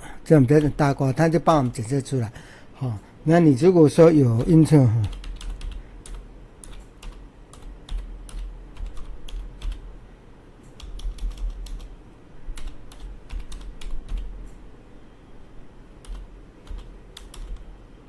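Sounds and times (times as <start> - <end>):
typing on computer keyboard: 0.5 - 0.8, 4.4 - 9.9, 10.7 - 11.9, 12.6 - 14.6, 16.0 - 17.7.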